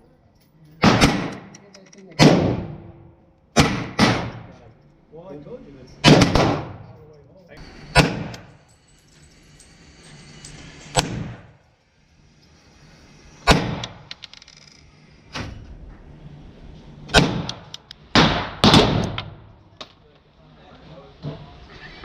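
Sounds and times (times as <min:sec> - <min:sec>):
gunshots echoing: 0:00.8 - 0:01.6, 0:02.2 - 0:04.6, 0:06.0 - 0:06.9, 0:07.9 - 0:08.5, 0:13.4 - 0:14.0, 0:17.1 - 0:19.5.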